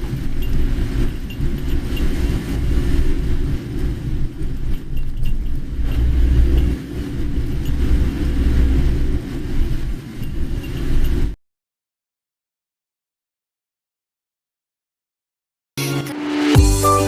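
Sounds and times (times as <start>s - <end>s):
car engine and tyres rumbling: 0.0s - 11.4s.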